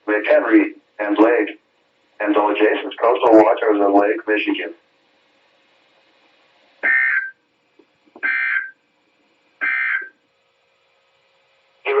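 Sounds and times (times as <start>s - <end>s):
buzzing data bursts: 8.2s - 8.8s, 9.6s - 10.1s.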